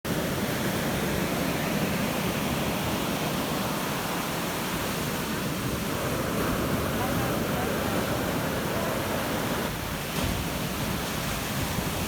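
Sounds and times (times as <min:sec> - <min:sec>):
ocean waves washing in: 0:00.1 - 0:12.0.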